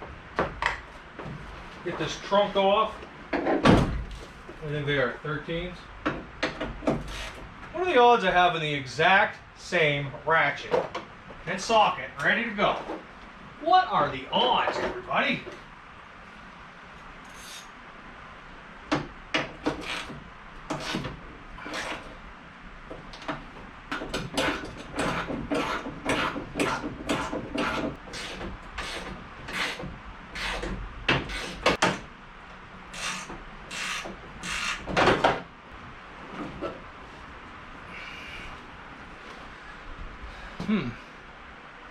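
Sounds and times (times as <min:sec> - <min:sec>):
hand ratchet clicking: 0:32.9 - 0:34.9.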